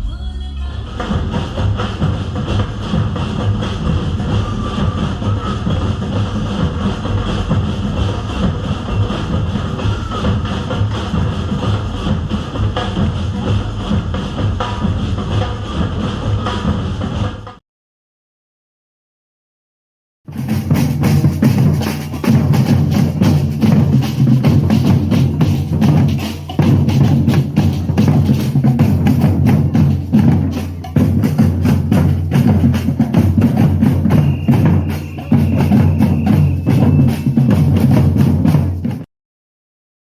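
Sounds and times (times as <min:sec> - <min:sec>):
samba drum ensemble: 0:00.0 - 0:17.6, 0:20.3 - 0:39.1
deep bass drums: 0:20.3 - 0:39.0.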